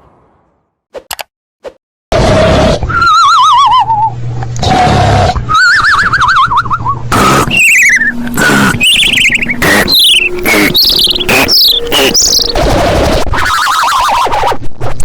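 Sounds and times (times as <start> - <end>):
cartoon snoring with whistle: 7.1 - 13.2.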